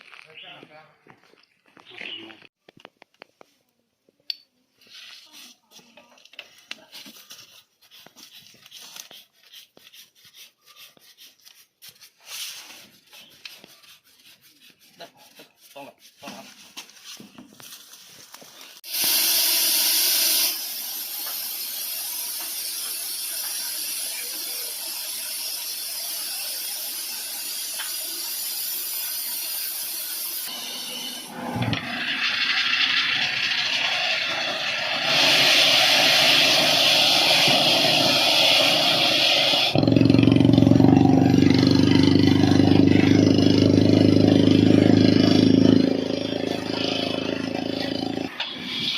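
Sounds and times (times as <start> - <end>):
compressed air rushing: 34.5 - 39.8
engine hum: 35.9 - 48.4.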